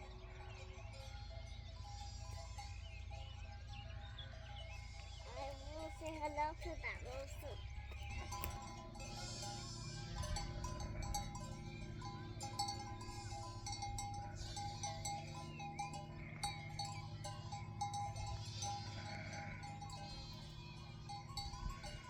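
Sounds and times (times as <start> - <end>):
sheep and lambs bleating: 8.2 - 22.0.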